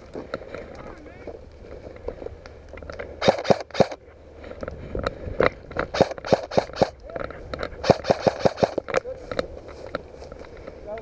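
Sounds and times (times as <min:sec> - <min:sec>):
sharp clicks and knocks: 0:05.8 - 0:09.0.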